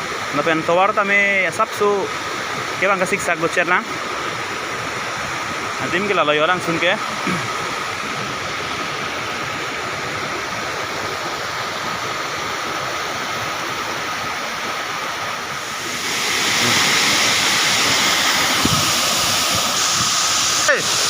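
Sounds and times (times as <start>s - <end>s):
waterfall pouring: 1.2s - 21.0s.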